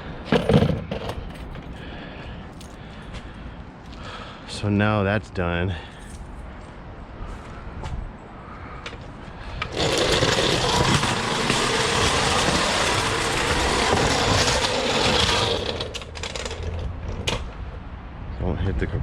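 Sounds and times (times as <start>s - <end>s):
small engine running: 9.6s - 16.8s.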